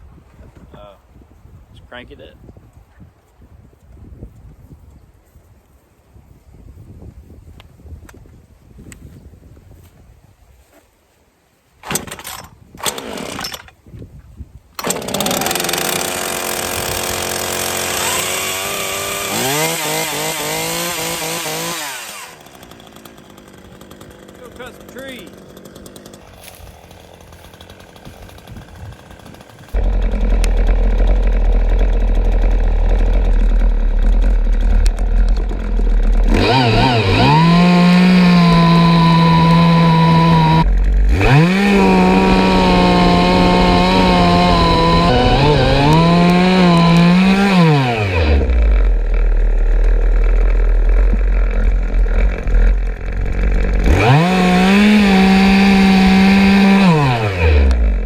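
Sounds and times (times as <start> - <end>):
chainsaw revving and idling: 11.8 - 13.8, 14.8 - 58.0.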